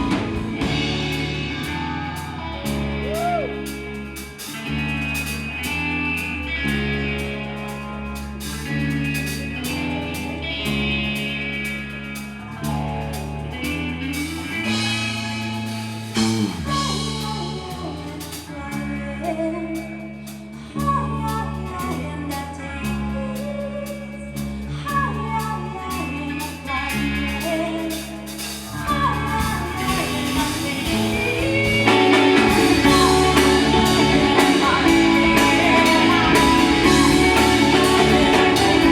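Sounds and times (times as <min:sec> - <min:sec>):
person singing: 0:00.0 - 0:04.6, 0:28.7 - 0:38.9
bass notes: 0:00.0 - 0:38.9
electric guitar: 0:00.0 - 0:38.9.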